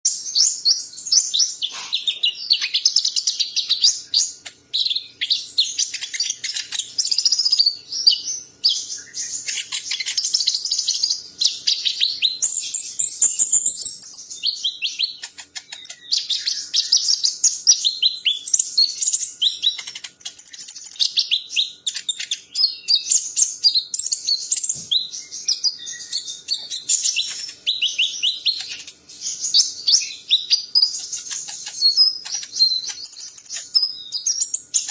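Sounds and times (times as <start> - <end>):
songbird singing: 0.0 - 34.9.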